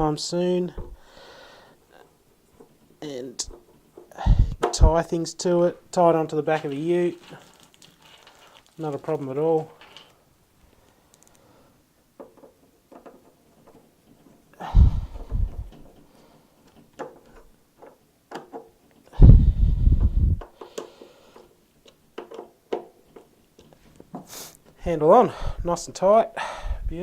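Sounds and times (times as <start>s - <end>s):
screws clicking and clattering: 6.6s - 10.2s.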